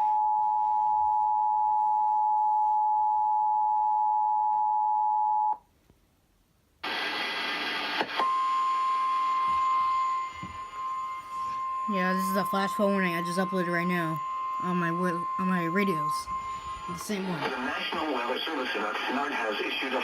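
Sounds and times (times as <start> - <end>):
radio static hiss: 6.8 - 8.2, 11.3 - 20.0
two-tone attention signal: 8.2 - 18.1
steady warning alarm tone: 8.2 - 20.0.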